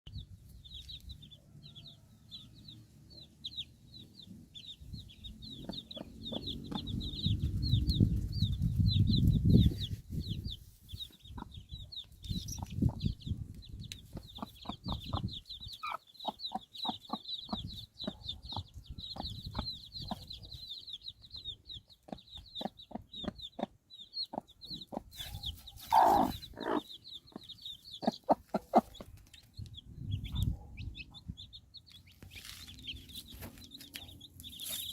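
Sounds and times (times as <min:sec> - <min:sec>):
chickens clucking: 0:03.2 - 0:34.9
chicken squawk: 0:25.2 - 0:26.9.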